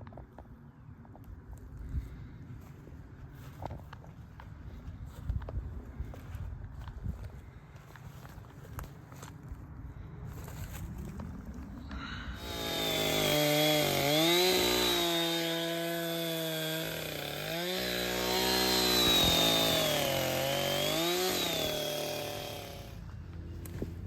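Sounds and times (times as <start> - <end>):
chainsaw cutting log: 12.4 - 23.0.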